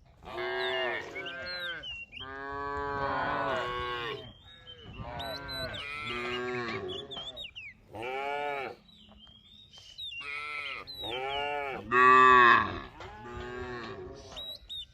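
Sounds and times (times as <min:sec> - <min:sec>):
cattle mooing: 0:00.2 - 0:04.3, 0:05.0 - 0:07.2, 0:08.0 - 0:08.8, 0:10.3 - 0:14.2.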